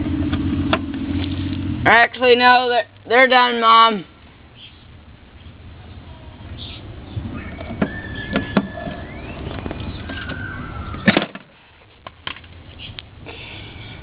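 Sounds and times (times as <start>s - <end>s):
low background rumble: 0.0s - 14.0s
faint brief whistling tones: 6.6s - 11.1s.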